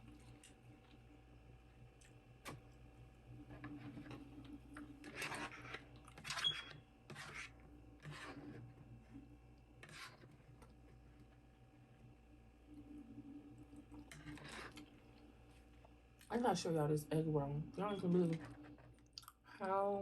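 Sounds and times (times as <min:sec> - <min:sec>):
person chewing food: 0:19.1 - 0:19.4.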